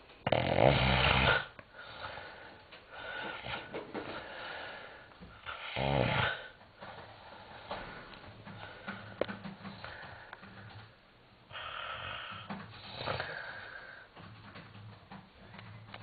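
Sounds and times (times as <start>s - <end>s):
man snoring: 0.2s - 1.6s, 5.5s - 6.6s, 11.5s - 14.0s
soft breathing: 1.6s - 5.6s, 6.3s - 14.6s.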